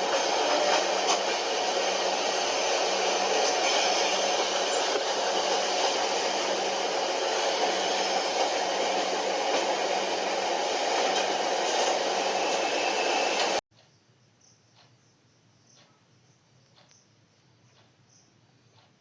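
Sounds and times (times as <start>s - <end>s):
train rushing noise: 0.0s - 13.6s
faint chirping: 13.8s - 18.9s.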